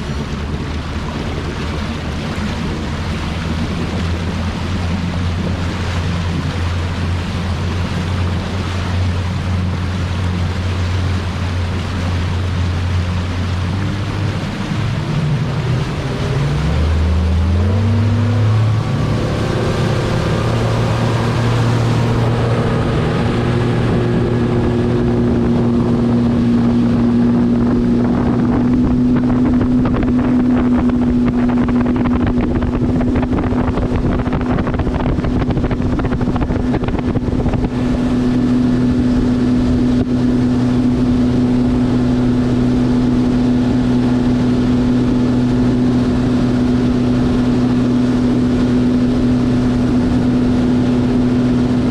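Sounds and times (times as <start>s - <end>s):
outboard motor running: 0.0s - 51.9s
water rushing: 0.0s - 51.9s
wind rushing: 17.6s - 51.9s.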